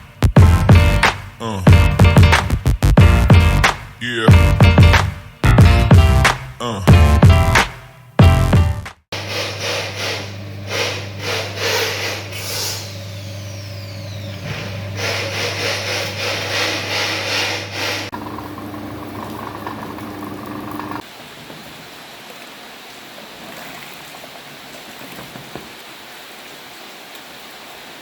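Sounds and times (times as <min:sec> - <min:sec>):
cooking machine motor humming: 0:09.2 - 0:21.0.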